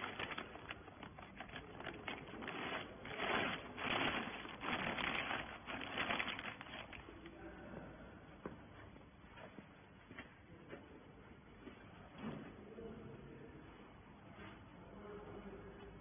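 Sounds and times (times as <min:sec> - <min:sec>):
noisy rustling: 0:00.0 - 0:07.3.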